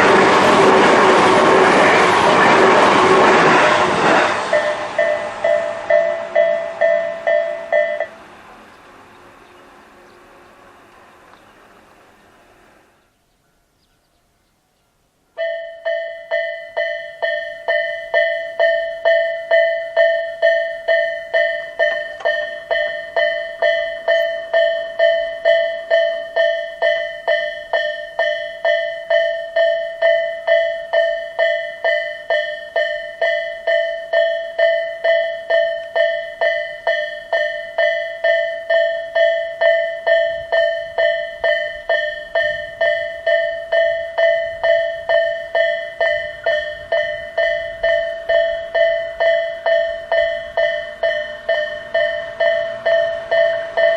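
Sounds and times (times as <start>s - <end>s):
level crossing electronic bell: 4.5s - 8.1s, 15.4s - 53.9s.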